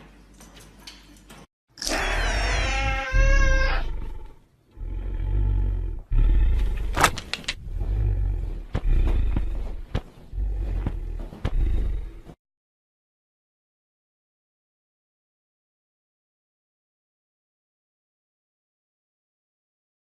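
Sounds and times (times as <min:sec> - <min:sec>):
animal calling: 0:01.8 - 0:04.4
heavy low rumble: 0:06.0 - 0:12.4.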